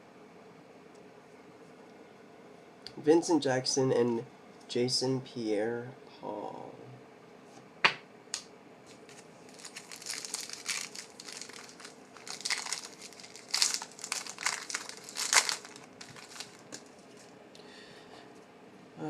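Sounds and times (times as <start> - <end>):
foil wrapper crinkling: 8.9 - 17.3.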